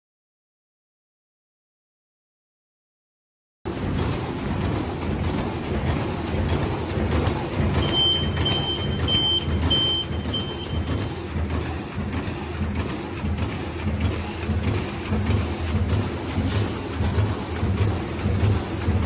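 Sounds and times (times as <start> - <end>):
machine rumbling: 3.7 - 19.0
short high beeps: 7.8 - 11.0.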